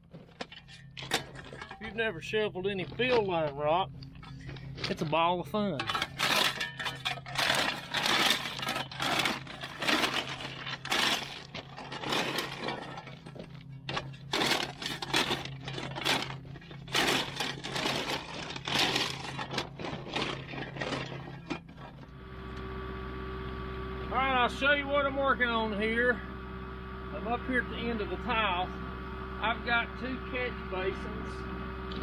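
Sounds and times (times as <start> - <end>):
shovel scraping gravel: 0.0 - 22.1
steady low hum: 0.0 - 32.0
stones rattling: 5.8 - 22.1.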